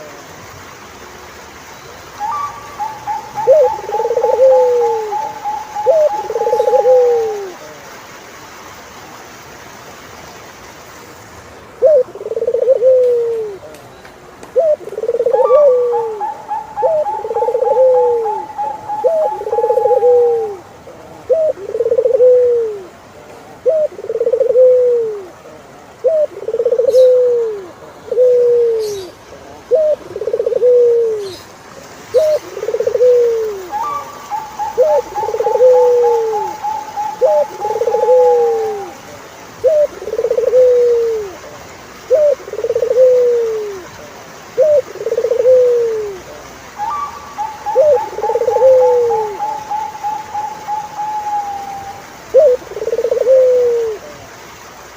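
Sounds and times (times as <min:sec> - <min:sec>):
bird trilling: 0:02.2 - 0:07.4
turtledove cooing: 0:02.2 - 0:07.6, 0:11.8 - 0:13.6, 0:14.6 - 0:20.7, 0:21.3 - 0:23.0, 0:23.6 - 0:25.4, 0:26.0 - 0:29.1, 0:29.7 - 0:31.3, 0:32.2 - 0:39.0, 0:39.6 - 0:41.4, 0:42.1 - 0:43.9, 0:44.6 - 0:46.2, 0:46.8 - 0:54.2.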